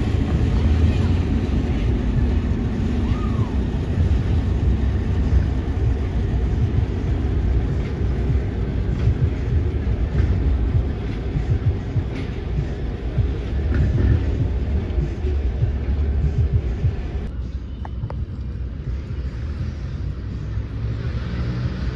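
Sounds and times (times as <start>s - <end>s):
train rumbling past: 0.0s - 21.9s.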